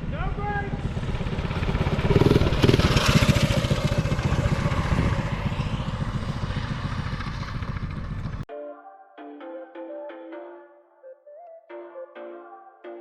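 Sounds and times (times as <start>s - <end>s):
minibike engine running hard: 0.0s - 8.4s.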